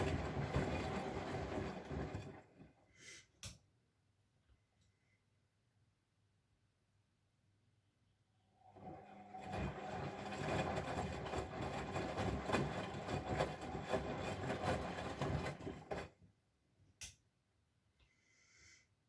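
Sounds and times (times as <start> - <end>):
washing machine running: 0.0 - 2.8, 8.6 - 16.2.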